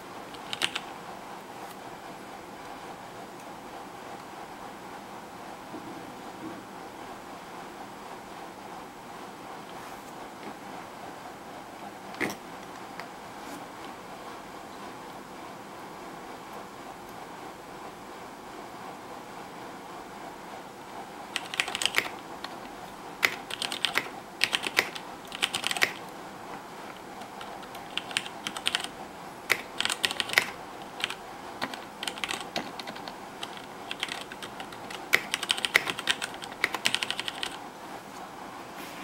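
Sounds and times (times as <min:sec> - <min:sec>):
mechanical keyboard keystroke clacks: 0:00.3 - 0:00.9, 0:21.3 - 0:22.6, 0:23.2 - 0:26.1, 0:26.9 - 0:28.9, 0:29.5 - 0:37.6.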